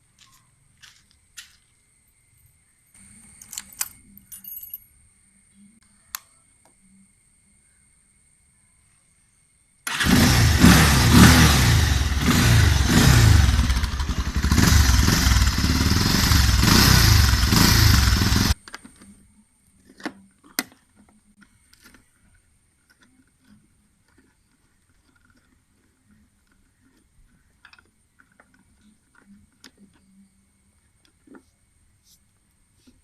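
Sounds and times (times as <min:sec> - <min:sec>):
motorcycle engine revving: 0:09.9 - 0:18.6.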